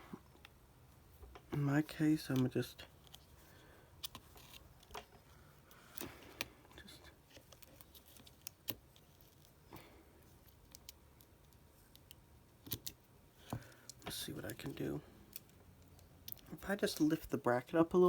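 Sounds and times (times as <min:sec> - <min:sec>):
small clicks and taps of tools: 0:10.4 - 0:14.1.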